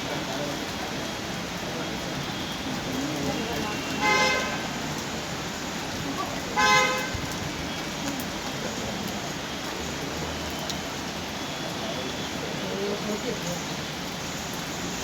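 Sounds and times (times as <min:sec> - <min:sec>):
rain: 0:00.0 - 0:15.0
traffic: 0:00.0 - 0:15.0
vehicle horn honk: 0:03.6 - 0:04.7, 0:06.6 - 0:07.2.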